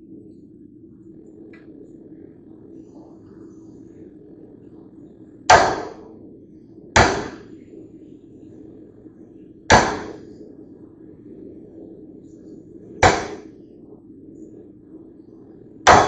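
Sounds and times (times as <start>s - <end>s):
steady low hum: 0.0s - 16.0s
hammer striking steel: 5.5s - 6.0s, 7.0s - 7.4s, 9.7s - 10.2s, 13.0s - 13.4s.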